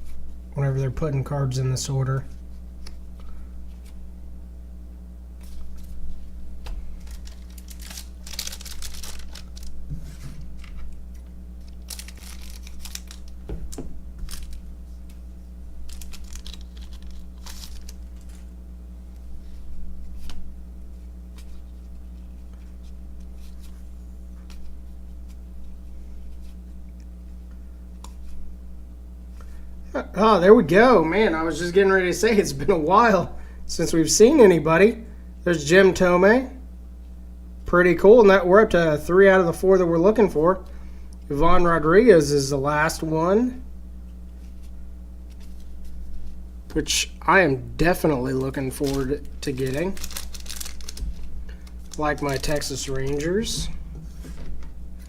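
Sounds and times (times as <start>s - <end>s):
steady low hum: 0.0s - 55.0s
cards rustling: 5.4s - 15.2s, 15.8s - 18.6s, 44.3s - 46.4s, 47.8s - 55.0s
wrapper tearing and crinkling: 7.0s - 9.8s, 11.6s - 14.7s, 15.8s - 18.5s, 47.9s - 53.4s.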